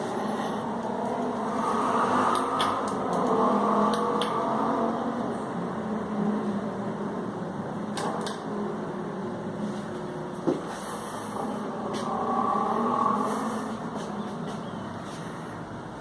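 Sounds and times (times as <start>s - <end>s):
ceiling fan whirring: 0.0s - 16.0s
sharp clicks: 2.3s - 4.4s.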